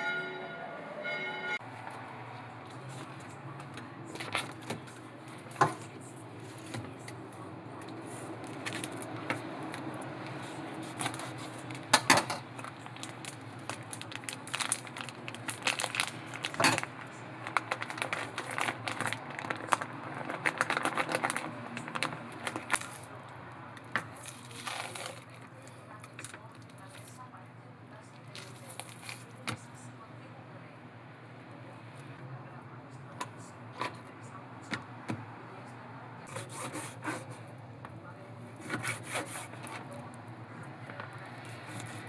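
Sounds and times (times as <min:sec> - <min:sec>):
packaging crinkling and rustling: 0:12.6 - 0:23.1, 0:24.1 - 0:25.4.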